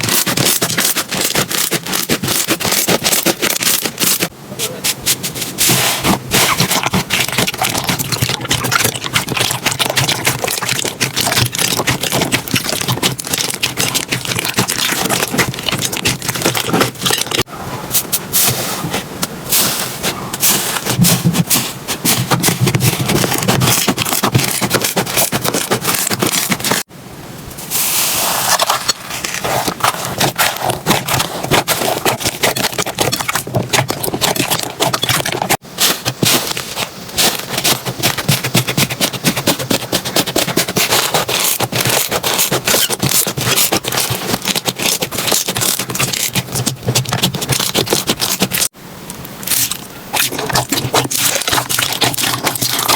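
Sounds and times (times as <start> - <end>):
slime crackling and popping: 0.0 - 4.3, 6.3 - 17.5, 22.1 - 26.9, 28.4 - 52.9
smooth hiss: 27.5 - 28.5.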